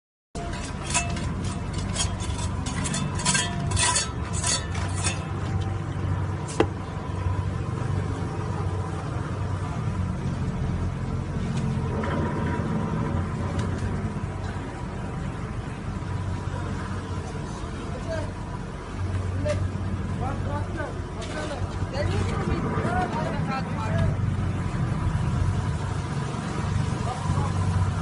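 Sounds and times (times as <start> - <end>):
shovel scraping cement mix: 0.4 - 5.4.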